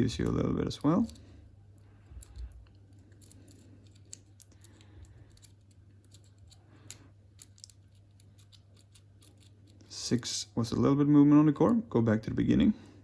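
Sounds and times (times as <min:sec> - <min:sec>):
lock pick metallic clicks: 0:02.2 - 0:09.9.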